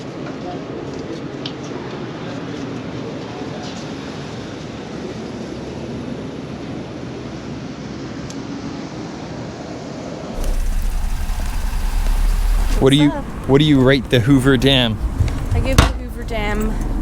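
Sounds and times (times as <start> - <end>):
deep low rumble: 10.4 - 14.2.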